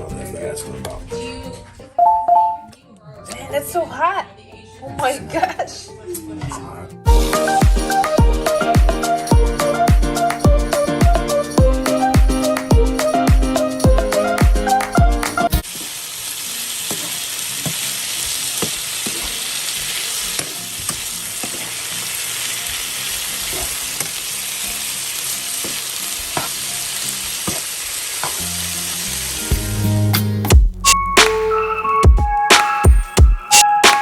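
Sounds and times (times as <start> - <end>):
food sizzling in a hot pan: 15.5 - 30.1.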